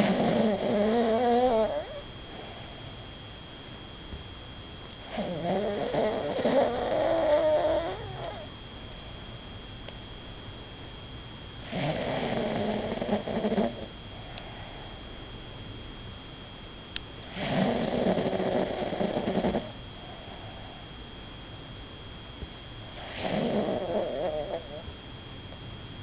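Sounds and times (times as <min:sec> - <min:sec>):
person snoring: 0:00.0 - 0:02.0, 0:05.1 - 0:08.4, 0:11.7 - 0:14.8, 0:17.3 - 0:19.7, 0:23.0 - 0:24.8
quiet breathing: 0:13.8 - 0:15.2, 0:19.4 - 0:21.0.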